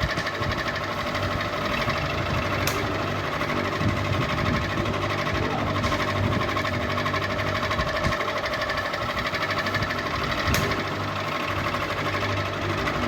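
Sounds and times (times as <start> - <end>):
ceiling fan rattling: 0.0 - 13.0
sharp click: 2.6 - 2.9, 10.4 - 10.8.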